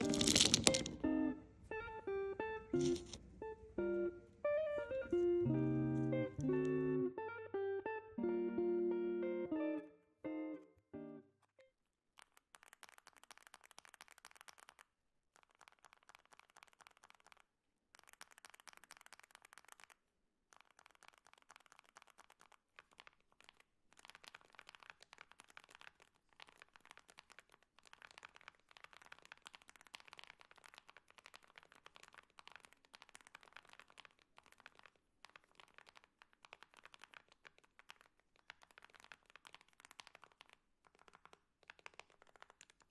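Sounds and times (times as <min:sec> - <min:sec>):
mechanical keyboard typing: 0:00.0 - 0:01.0, 0:02.7 - 0:03.2, 0:20.6 - 0:42.9.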